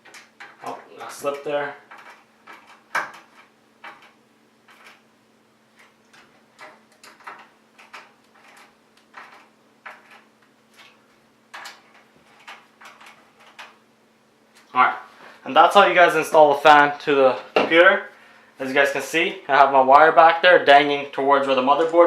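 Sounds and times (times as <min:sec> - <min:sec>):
screwdriver clicks and creaks: 0:06.1 - 0:13.8.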